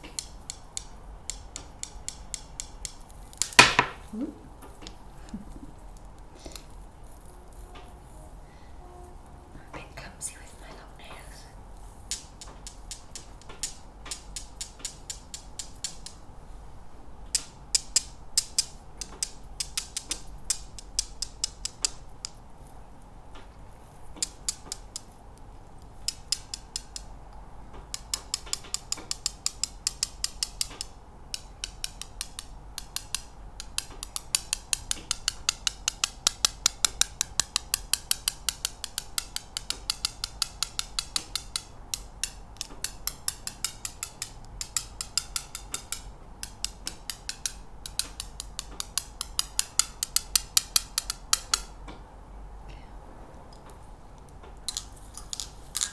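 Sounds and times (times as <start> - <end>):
fingernails tapping: 0.1 - 5.7, 27.7 - 51.7.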